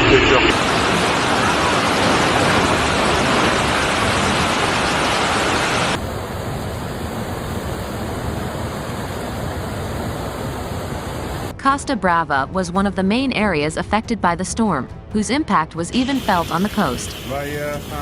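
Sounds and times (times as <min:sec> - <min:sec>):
rushing storm water: 0:00.0 - 0:11.5, 0:16.0 - 0:18.0.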